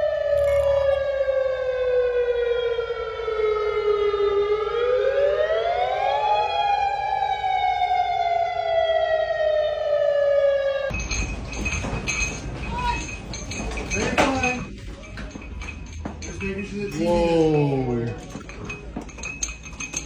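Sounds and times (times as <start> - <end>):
warning siren wailing: 0.0 - 10.9.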